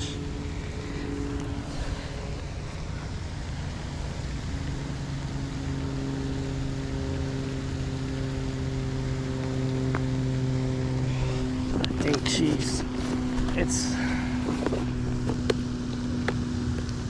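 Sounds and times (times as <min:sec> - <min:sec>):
steady rushing background: 0:00.0 - 0:05.0, 0:10.6 - 0:16.7
engine running steadily: 0:00.0 - 0:17.0.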